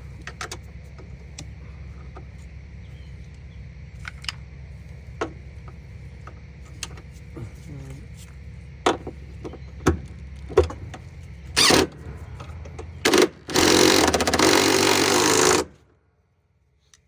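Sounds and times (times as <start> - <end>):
power driver running: 0.0 - 15.9.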